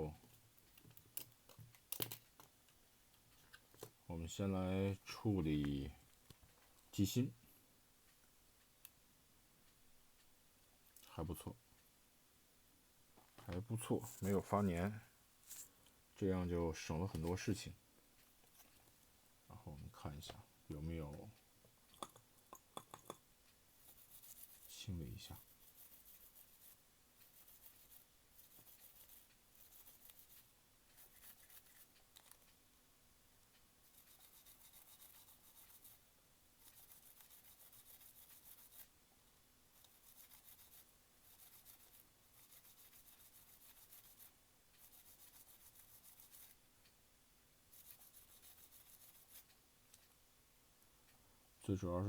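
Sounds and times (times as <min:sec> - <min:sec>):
faint rubbing strokes: 0:13.6 - 0:15.8, 0:23.7 - 0:32.4, 0:33.8 - 0:39.0, 0:39.7 - 0:46.6, 0:47.7 - 0:50.1.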